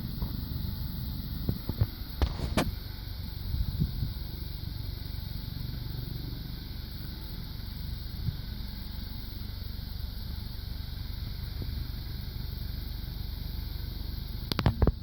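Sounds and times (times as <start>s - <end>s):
helicopter engine and rotor: 4.2s - 14.4s.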